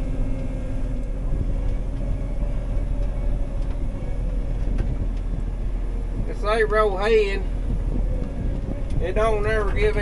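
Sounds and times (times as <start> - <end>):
combine harvester drone: 0.0 - 10.0.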